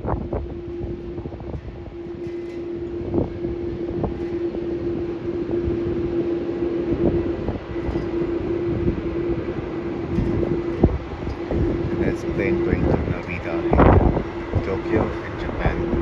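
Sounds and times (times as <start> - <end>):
jet engine drone: 0.0 - 16.0.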